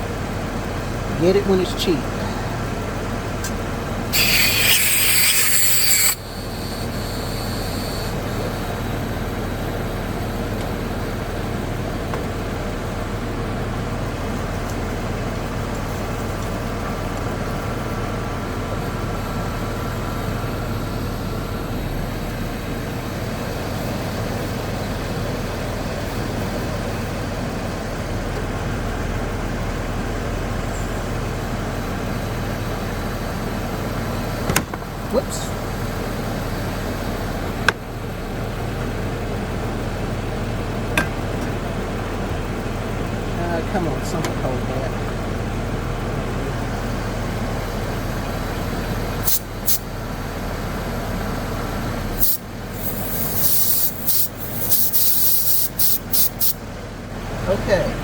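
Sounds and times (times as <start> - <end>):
car engine idling: 0.0 - 58.0
refrigerant hissing: 3.8 - 11.1, 46.8 - 50.0, 52.0 - 56.6.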